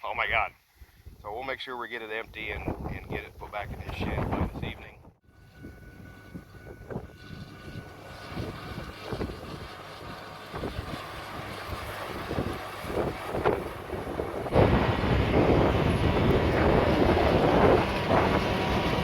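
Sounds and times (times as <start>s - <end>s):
engine running: 5.2s - 19.0s.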